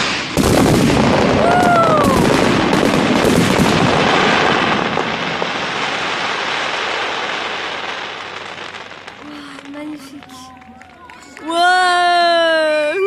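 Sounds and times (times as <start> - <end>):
heavy firework bangs: 0.0 - 12.7
fireworks crackling: 0.0 - 13.0.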